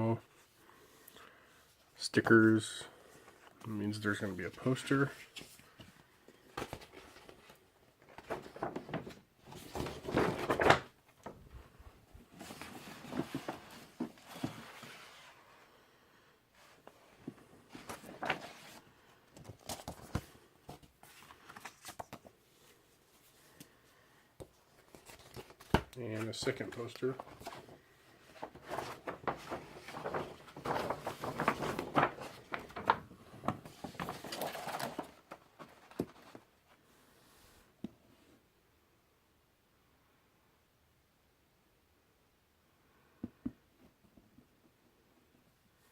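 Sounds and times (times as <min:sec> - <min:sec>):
paper rustling against cardboard: 0:04.0 - 0:10.9, 0:12.2 - 0:15.5, 0:16.6 - 0:23.8, 0:24.4 - 0:36.5.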